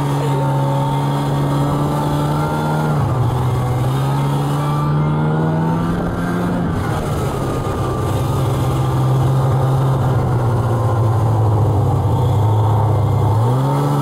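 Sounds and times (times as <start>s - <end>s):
snowmobile engine revving: 0.0s - 14.0s.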